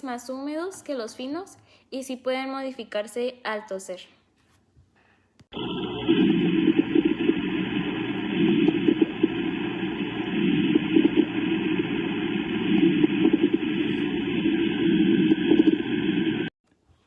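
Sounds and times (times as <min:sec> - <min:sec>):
bubbling lung crackles: 0:05.5 - 0:16.5.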